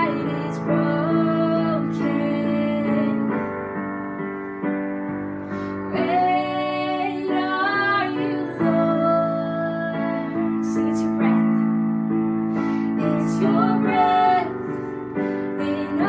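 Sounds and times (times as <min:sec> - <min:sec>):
woman singing: 0:00.0 - 0:03.5, 0:05.8 - 0:11.6, 0:12.9 - 0:16.0.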